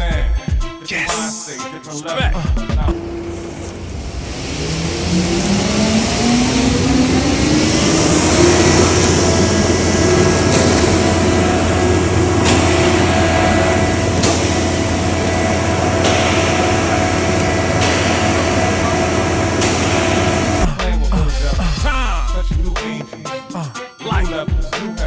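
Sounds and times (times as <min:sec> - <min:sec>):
engine running at high speed: 0:02.9 - 0:20.8.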